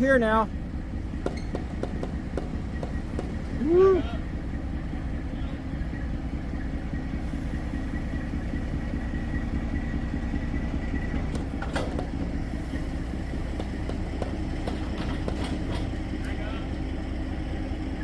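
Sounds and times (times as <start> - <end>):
heavy vehicle engine rumbling: 0.0 - 18.0
sharp knocks: 1.2 - 3.6.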